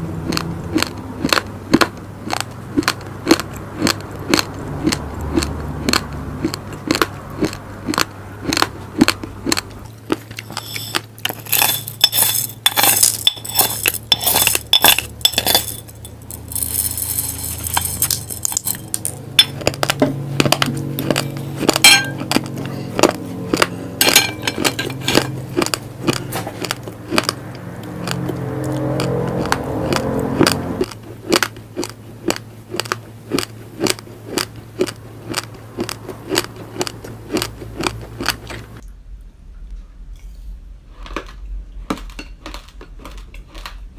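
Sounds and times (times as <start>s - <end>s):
rice grains crunched by teeth: 0.3s - 38.7s, 41.0s - 43.9s
grains rattling against a dish: 10.3s - 22.3s, 24.0s - 27.3s.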